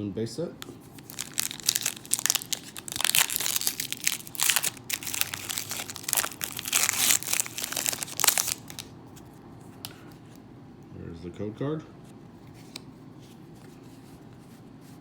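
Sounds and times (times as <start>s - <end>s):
foil wrapper crinkling and tearing: 0.9s - 8.9s.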